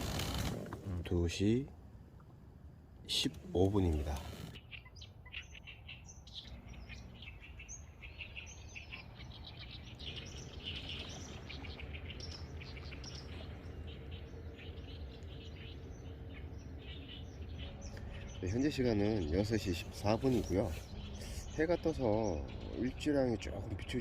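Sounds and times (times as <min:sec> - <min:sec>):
faint steady hum: 0:00.0 - 0:24.0
small birds chirping and trilling: 0:03.1 - 0:24.0
low steady rumble: 0:05.7 - 0:24.0.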